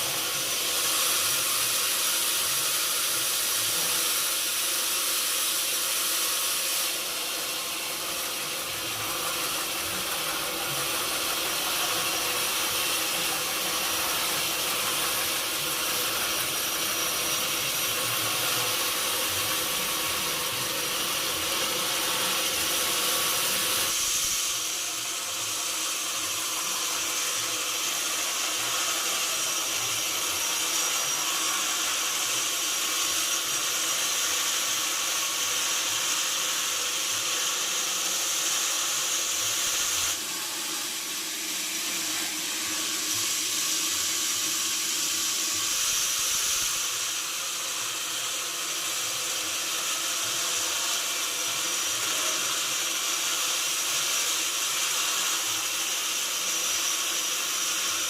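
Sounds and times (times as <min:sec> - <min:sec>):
sawmill saw cutting wood: 0:00.0 - 0:58.0.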